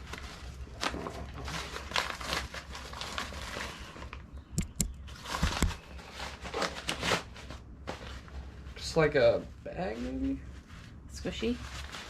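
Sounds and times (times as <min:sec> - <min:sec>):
packaging rustling and crinkling: 0:00.0 - 0:09.0, 0:10.0 - 0:12.0.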